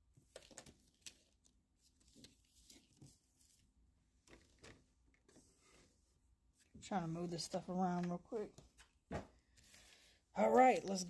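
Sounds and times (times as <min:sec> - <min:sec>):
trading cards and cardboard rustling: 0:00.1 - 0:06.0.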